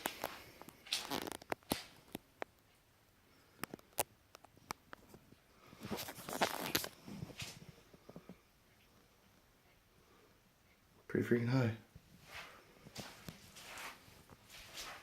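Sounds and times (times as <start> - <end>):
footsteps and shuffling: 5.0 - 8.4, 12.0 - 15.0
scuffing and scraping: 12.1 - 15.0.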